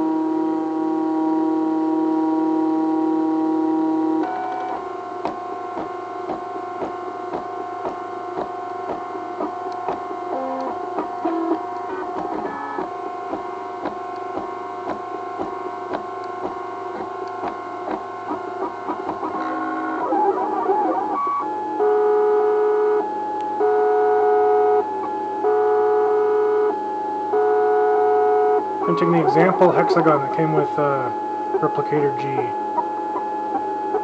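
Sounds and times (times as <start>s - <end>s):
stepper motors whining: 2.5s - 21.5s, 28.6s - 34.0s
printer ticking: 4.2s - 19.6s.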